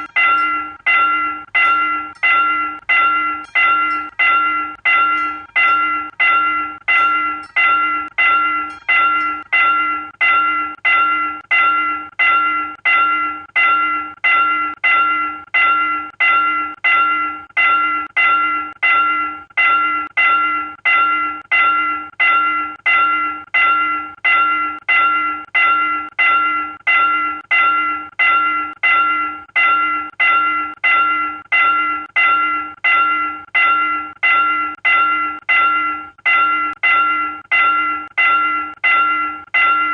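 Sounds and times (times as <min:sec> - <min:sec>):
railroad crossing bell ringing: 0:00.0 - 0:39.9.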